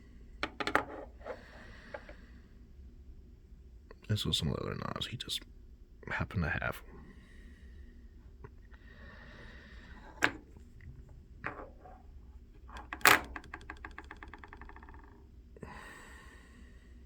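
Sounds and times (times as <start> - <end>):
knocks of handled objects: 0.4 - 1.0, 10.1 - 10.6, 12.6 - 15.2.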